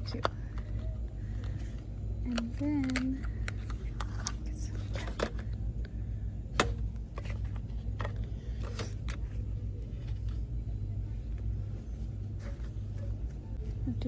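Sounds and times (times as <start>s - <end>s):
clicks and knocks of handling items: 0.0s - 5.6s, 6.5s - 10.4s
steady low rumble: 0.0s - 14.0s.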